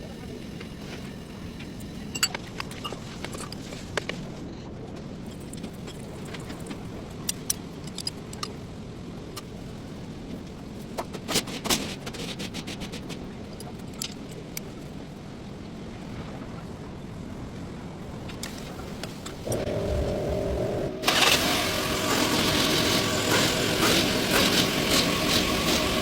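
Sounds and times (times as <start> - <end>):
car engine running: 19.4 - 26.0.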